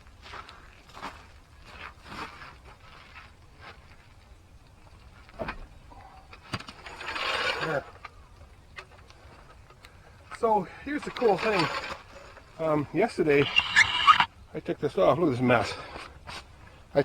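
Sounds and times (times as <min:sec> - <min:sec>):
car jack scraping: 0:05.4 - 0:08.2, 0:10.9 - 0:14.3.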